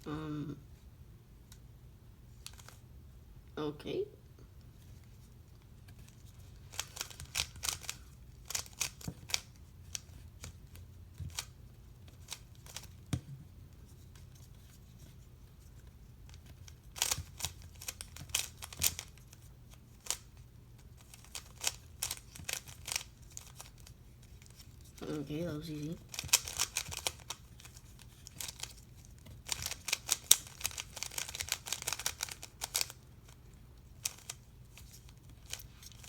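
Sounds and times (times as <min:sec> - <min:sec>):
plastic puzzle cube clicking: 0:06.7 - 0:10.5, 0:11.2 - 0:11.5, 0:16.3 - 0:19.3, 0:21.0 - 0:24.4, 0:26.0 - 0:36.0.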